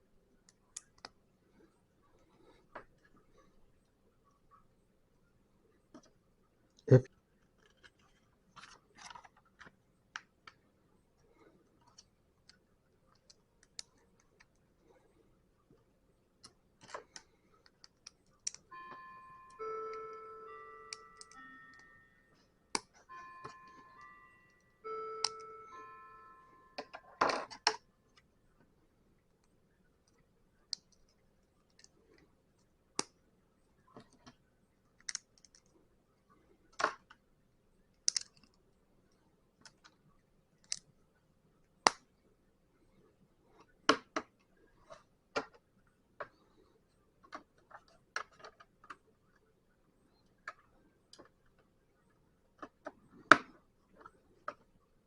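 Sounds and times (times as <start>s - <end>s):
ringing musical tones: 18.7s - 27.7s
plastic bricks clicking: 38.0s - 38.5s.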